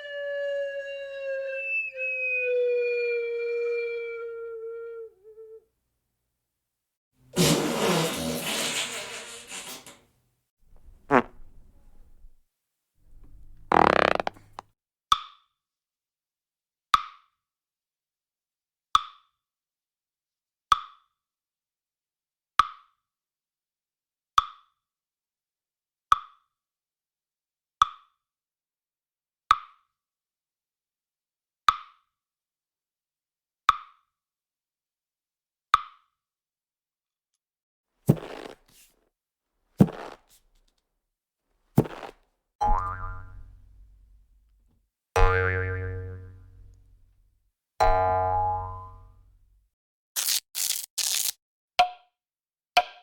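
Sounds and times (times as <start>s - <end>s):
cartoon fart sound effect: 7.4s - 10.0s, 10.7s - 12.4s, 13.1s - 14.6s, 38.1s - 38.6s, 39.8s - 40.2s, 41.8s - 43.6s, 50.2s - 51.3s.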